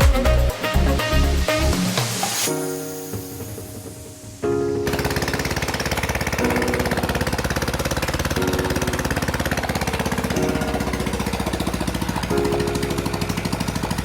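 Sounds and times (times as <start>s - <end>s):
music chords: 0.0s - 7.7s
engine pulsing: 4.9s - 14.0s.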